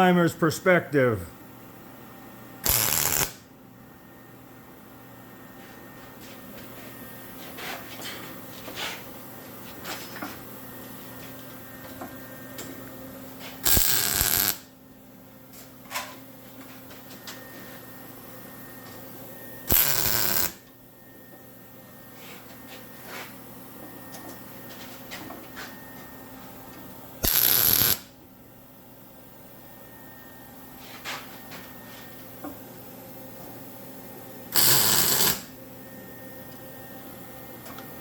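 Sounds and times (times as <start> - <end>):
arc welding bursts: 2.6 - 3.4, 13.6 - 14.7, 19.7 - 20.6, 27.2 - 28.1, 34.5 - 35.5.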